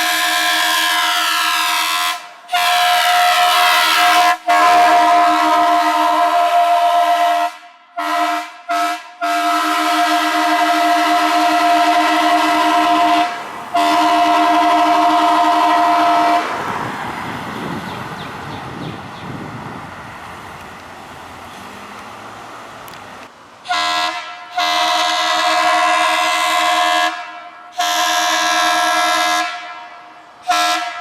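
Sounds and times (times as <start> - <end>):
fire truck horn blasts: 0.0 - 17.0, 23.7 - 31.0.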